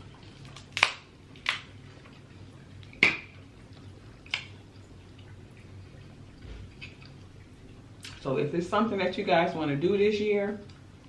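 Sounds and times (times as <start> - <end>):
seafood shells cracking: 0.4 - 1.8.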